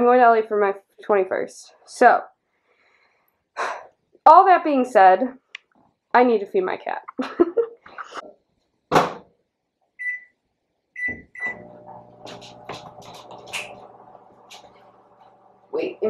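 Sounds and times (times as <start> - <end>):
thud: 8.9 - 9.3
microwave keypad beeps: 10.0 - 10.3, 11.0 - 11.8
microwave running hum: 11.0 - 16.0.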